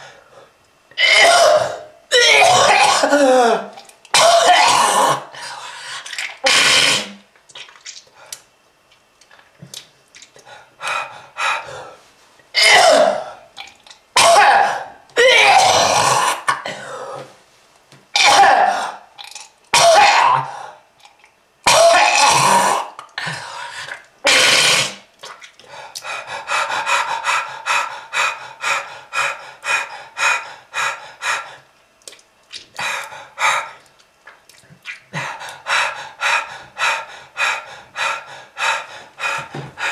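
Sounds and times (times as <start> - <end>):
man coughing: 2.3 - 3.6.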